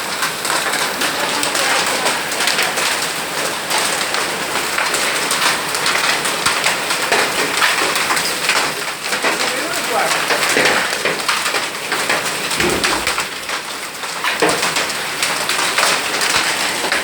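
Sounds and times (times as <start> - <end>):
hail and rain pelting: 0.0 - 17.0.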